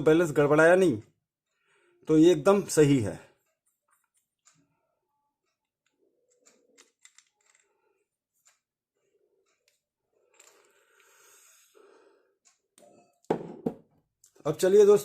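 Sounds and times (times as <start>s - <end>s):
small parts clicking: 5.4s - 11.7s.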